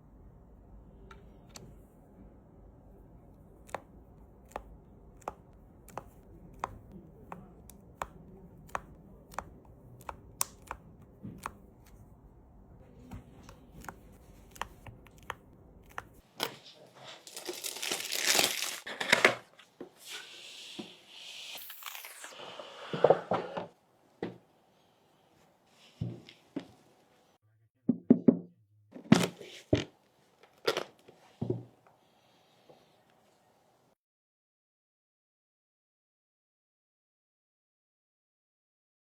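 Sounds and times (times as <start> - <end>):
packaging crinkling and tearing: 17.1 - 19.5.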